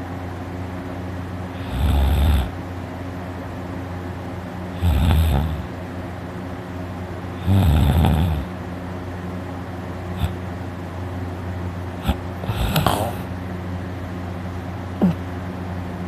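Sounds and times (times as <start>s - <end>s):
person snoring loudly: 1.5s - 2.6s, 4.8s - 5.7s, 7.4s - 8.5s, 12.0s - 13.3s.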